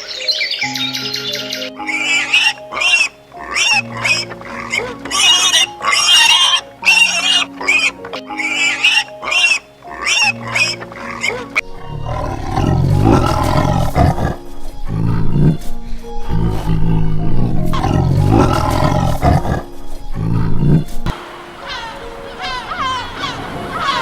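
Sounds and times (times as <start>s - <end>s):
background music: 0.0s - 24.0s
large animal roaring: 11.3s - 20.9s.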